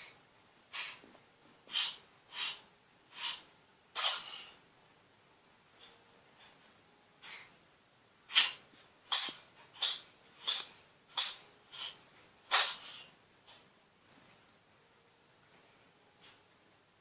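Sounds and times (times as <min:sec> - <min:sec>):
cat sneezing: 0:01.7 - 0:02.6, 0:03.2 - 0:04.6, 0:08.3 - 0:13.1.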